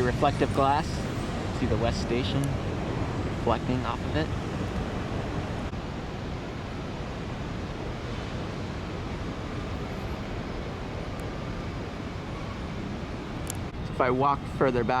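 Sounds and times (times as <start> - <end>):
traffic hum: 0.0 - 15.0.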